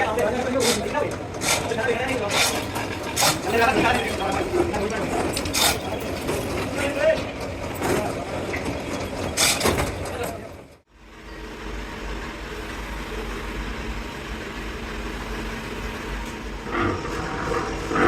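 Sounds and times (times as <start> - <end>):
irregular noisy clatter: 0.0 - 10.9, 15.9 - 18.0
machinery low rumble and hum: 10.9 - 18.0.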